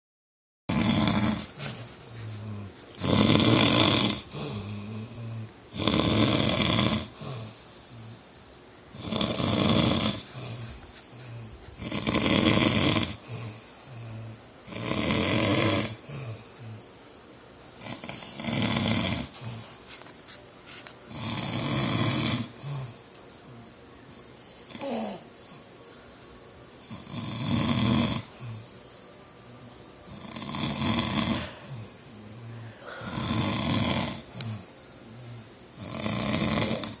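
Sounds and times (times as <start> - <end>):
man snoring loudly: 0.7 - 1.8, 2.4 - 7.6, 8.9 - 10.7, 11.8 - 16.8, 17.8 - 19.6, 21.1 - 23.0, 26.8 - 28.7, 30.1 - 34.8, 35.7 - 37.0.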